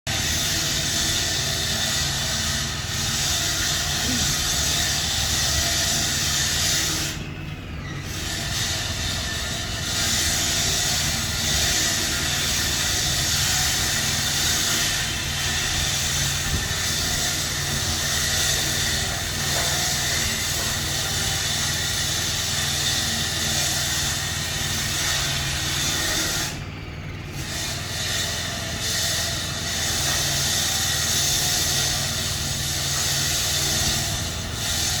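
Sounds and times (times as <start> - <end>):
paint spray gun hissing: 0.2 - 7.2, 27.4 - 35.0.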